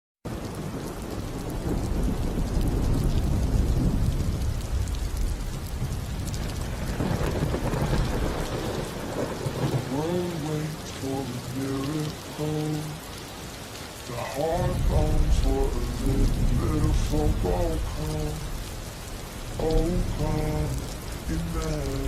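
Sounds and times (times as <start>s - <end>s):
steady rain: 0.3s - 22.0s
thunder rumbling: 0.6s - 13.2s, 14.0s - 22.0s
person singing: 9.9s - 13.1s, 14.1s - 18.6s, 19.6s - 22.0s.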